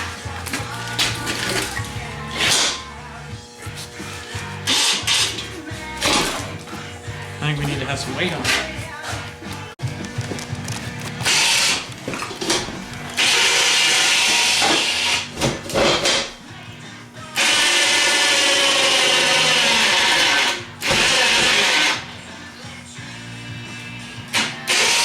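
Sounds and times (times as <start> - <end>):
background music: 0.0 - 25.0
power tool working steel: 4.6 - 8.8, 11.2 - 11.9, 13.0 - 16.3, 17.4 - 22.2, 24.3 - 25.0.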